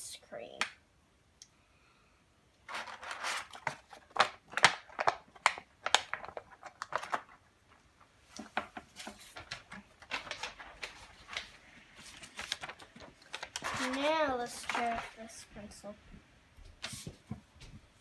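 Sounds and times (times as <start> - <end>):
packaging rustling: 2.6 - 15.3.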